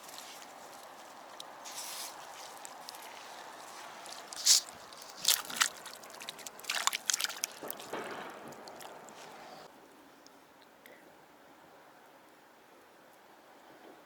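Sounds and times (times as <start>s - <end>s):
water splashing and sloshing: 0.0s - 9.7s.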